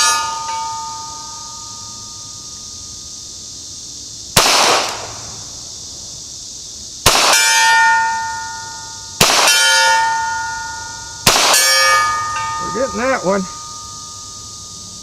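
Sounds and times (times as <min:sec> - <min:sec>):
steel target ringing: 0:00.0 - 0:03.1, 0:07.1 - 0:15.0
gunshots: 0:04.4 - 0:05.2, 0:07.0 - 0:07.5, 0:09.2 - 0:09.6, 0:11.2 - 0:11.9.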